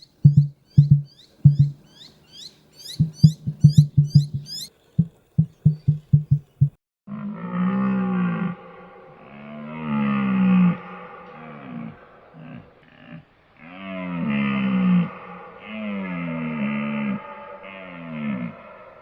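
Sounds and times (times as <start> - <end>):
long low animal call: 0.0 - 1.8, 2.8 - 19.0
low thuds: 0.0 - 1.8, 2.9 - 6.8
high downward-sweeping chirps: 0.0 - 6.7.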